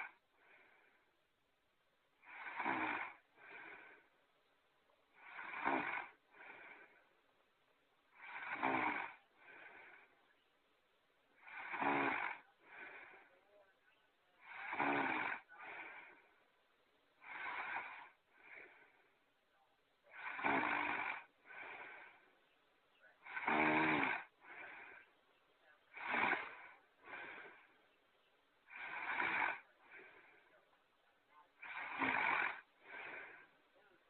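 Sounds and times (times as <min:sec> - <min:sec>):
snoring: 0:00.0 - 0:01.0, 0:02.2 - 0:04.1, 0:05.1 - 0:07.0, 0:08.1 - 0:10.1, 0:11.4 - 0:13.8, 0:14.4 - 0:16.4, 0:17.2 - 0:19.1, 0:20.1 - 0:22.3, 0:23.1 - 0:25.1, 0:25.9 - 0:27.8, 0:28.6 - 0:30.7, 0:31.4 - 0:34.0.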